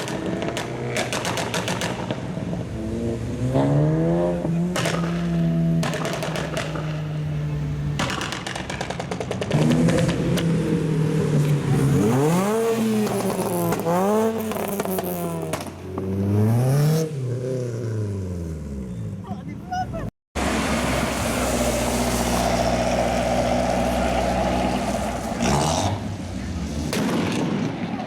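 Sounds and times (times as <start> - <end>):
exhaust pops and crackles: 0.0 - 2.7, 4.6 - 10.8, 11.4 - 16.2
car engine revving: 0.0 - 18.8, 20.4 - 26.9.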